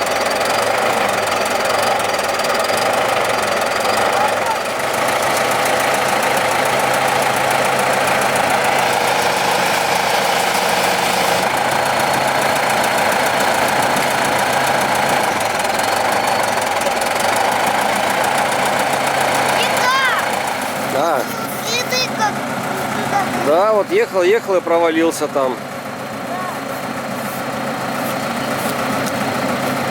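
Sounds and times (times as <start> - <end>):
bulldozer engine running: 0.0 - 29.9.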